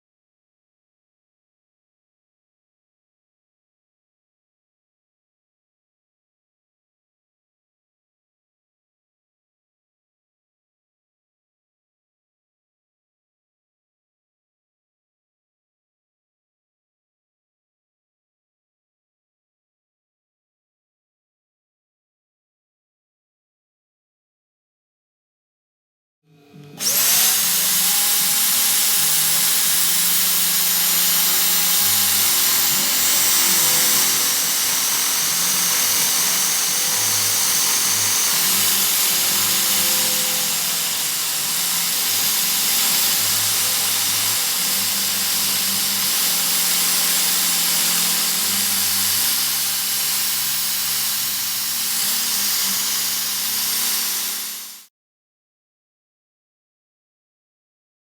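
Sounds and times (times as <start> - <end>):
power tool whirring: 26.5 - 54.9.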